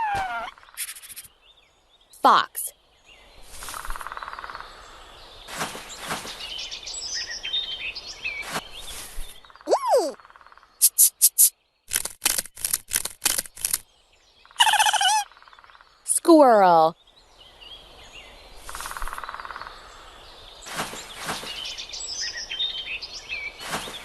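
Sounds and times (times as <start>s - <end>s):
fox yelp: 0.0s - 0.9s, 14.6s - 15.3s
small bird chirps: 0.0s - 2.2s, 6.0s - 11.6s, 14.4s - 16.4s
outdoor background noise: 0.0s - 24.0s.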